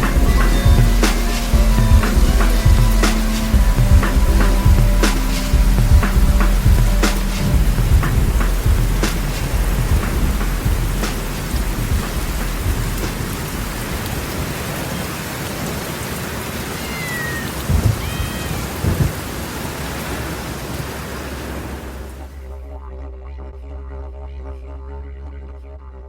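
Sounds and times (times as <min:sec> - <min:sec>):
low rumble of thunder: 0:00.0 - 0:14.7, 0:17.6 - 0:19.6
steady rain: 0:00.0 - 0:22.4.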